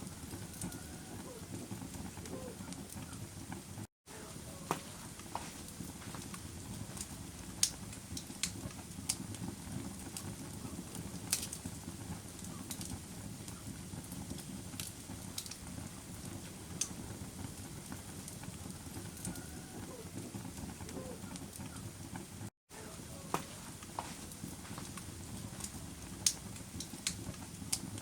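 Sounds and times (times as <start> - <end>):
low hiss and rumble of flames: 0.0 - 28.0
burning wood popping and snapping: 4.6 - 21.7, 23.2 - 28.0.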